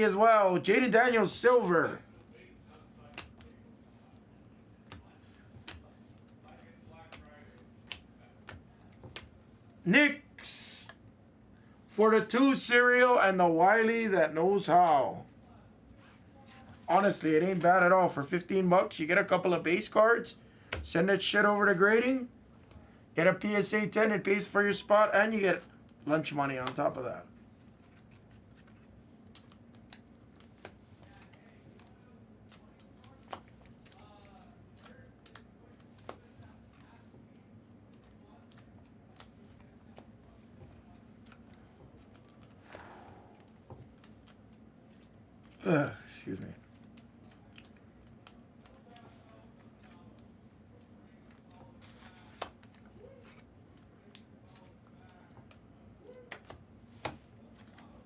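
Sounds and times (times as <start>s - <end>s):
low room hum: 0.0s - 58.0s
trading cards rustling and sliding: 50.8s - 53.5s.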